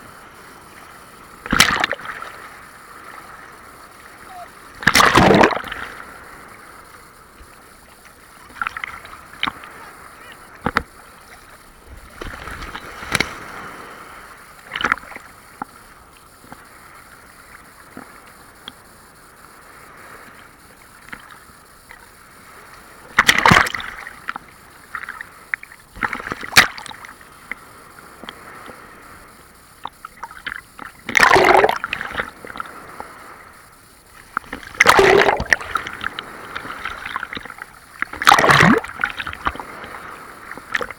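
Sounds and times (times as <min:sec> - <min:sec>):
sea waves washing: 0:00.0 - 0:40.9
loud sudden splashes: 0:04.8 - 0:05.9, 0:34.8 - 0:35.7, 0:38.2 - 0:39.0.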